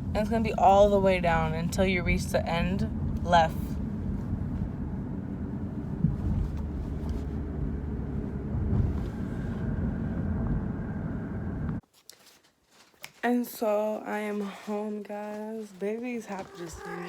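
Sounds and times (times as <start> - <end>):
car engine and road noise: 0.0 - 11.8.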